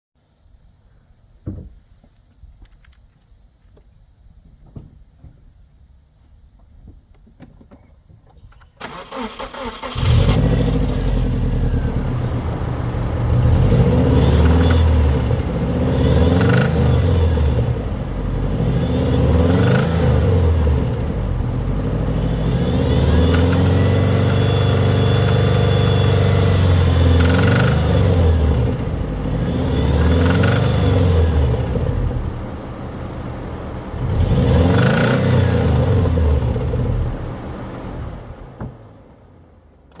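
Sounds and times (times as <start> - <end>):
car engine revving: 8.8 - 38.9.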